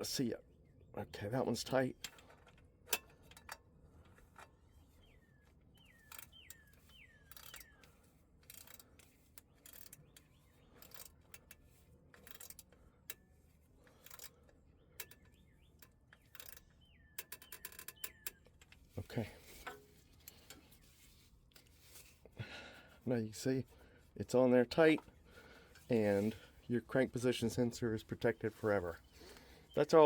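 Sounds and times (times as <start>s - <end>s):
birds chirping: 4.3s - 11.7s, 13.8s - 21.0s, 22.4s - 30.0s
ratchet clicks: 6.0s - 18.8s.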